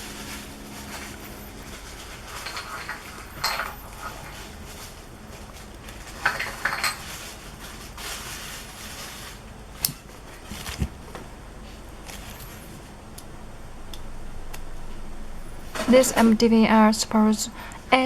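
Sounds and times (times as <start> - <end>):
cables and connectors clicking: 12.0 - 17.9.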